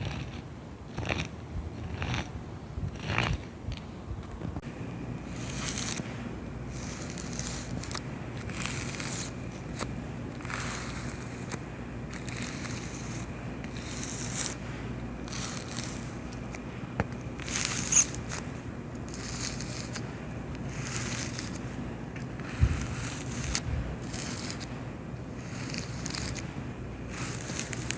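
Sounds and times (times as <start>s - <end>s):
steady low hum: 0.0s - 27.9s
cockroaches scratching and rustling: 5.2s - 6.1s, 6.7s - 14.6s, 15.2s - 16.6s, 17.3s - 21.7s, 22.3s - 24.7s, 25.4s - 27.9s.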